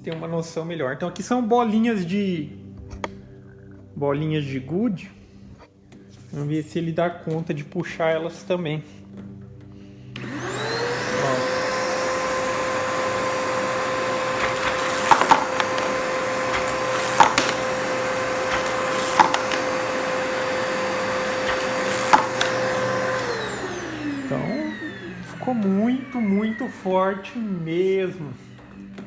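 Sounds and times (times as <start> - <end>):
vacuum cleaner motor whine: 10.1 - 29.0.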